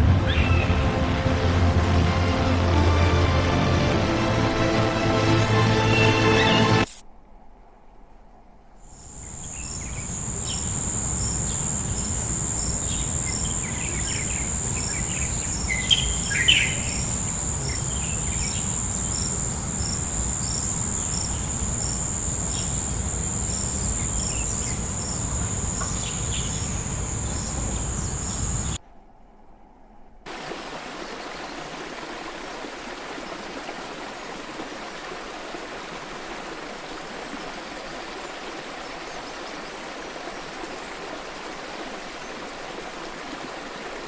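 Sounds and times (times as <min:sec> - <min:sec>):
crickets trilling: 0:08.9 - 0:28.8.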